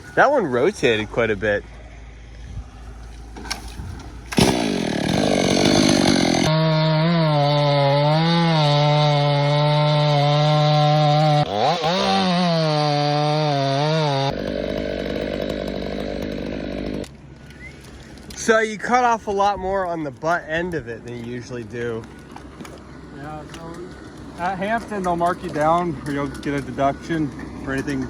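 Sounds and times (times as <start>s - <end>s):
chainsaw cutting wood: 3.4s - 18.4s, 22.1s - 28.0s.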